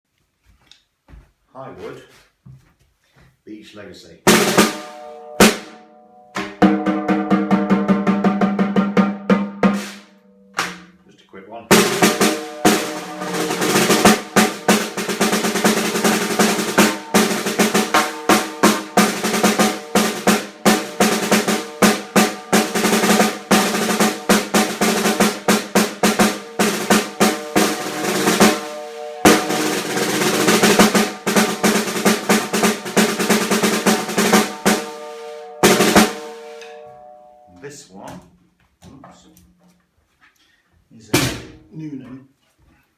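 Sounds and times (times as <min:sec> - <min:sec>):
snare drum strokes and rolls: 0:04.3 - 0:05.7, 0:06.4 - 0:10.9, 0:11.7 - 0:36.6.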